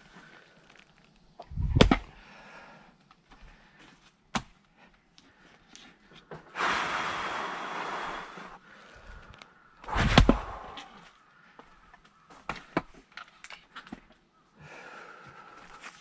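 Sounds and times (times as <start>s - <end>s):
axe splitting log: 1.6s - 2.1s, 9.9s - 10.6s
hiss of noise: 6.6s - 8.6s.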